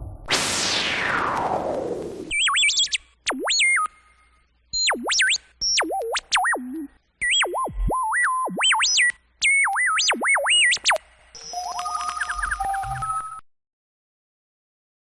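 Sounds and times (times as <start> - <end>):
rapid electronic ticking: 4.8 - 13.3.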